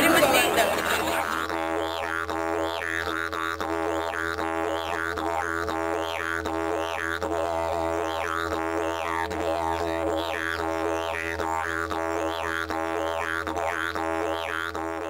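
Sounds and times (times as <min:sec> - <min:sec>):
didgeridoo drone: 0:00.0 - 0:15.0.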